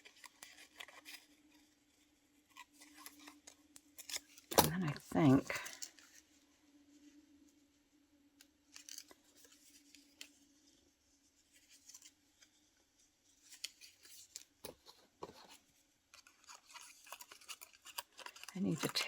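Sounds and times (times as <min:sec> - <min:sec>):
paper rustle: 0:00.0 - 0:07.1, 0:08.7 - 0:19.0
scissors snipping paper: 0:16.2 - 0:19.0.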